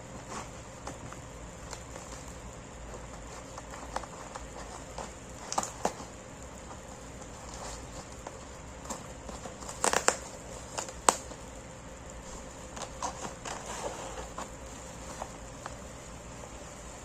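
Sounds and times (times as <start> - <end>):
packaging crinkling and rustling: 0.2 - 11.5, 12.2 - 16.6.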